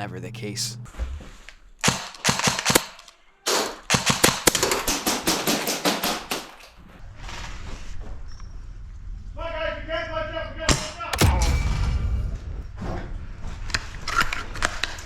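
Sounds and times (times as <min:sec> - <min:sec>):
airsoft guns firing: 0:01.8 - 0:06.6.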